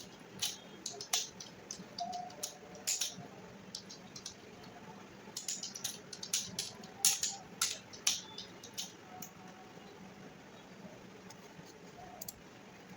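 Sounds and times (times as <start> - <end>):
computer keyboard typing: 0.0 - 9.4.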